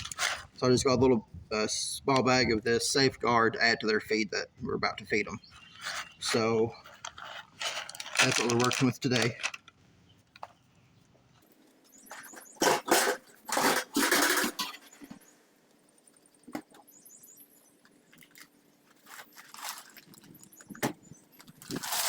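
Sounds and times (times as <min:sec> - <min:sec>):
handling rustling and scraping: 0:00.0 - 0:00.9, 0:05.4 - 0:17.0, 0:17.8 - 0:22.0.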